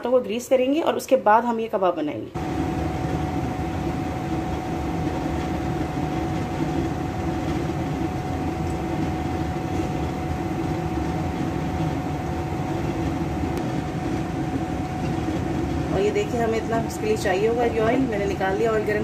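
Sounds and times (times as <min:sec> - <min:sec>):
low mechanical rumble: 0:02.3 - 0:19.0
thin hum tone: 0:02.4 - 0:19.0.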